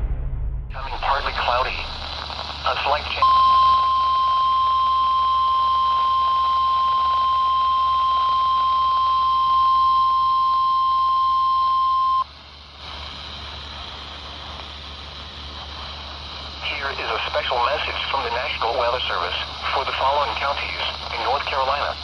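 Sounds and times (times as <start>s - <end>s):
radio reception hiss: 0.7s - 22.0s
steady warning alarm tone: 2.7s - 12.3s.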